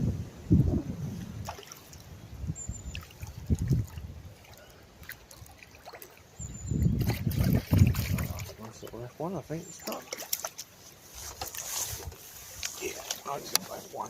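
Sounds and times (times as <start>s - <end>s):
wind buffeting microphone: 0.0s - 5.6s, 6.4s - 9.0s
water splashing and trickling: 0.6s - 14.0s.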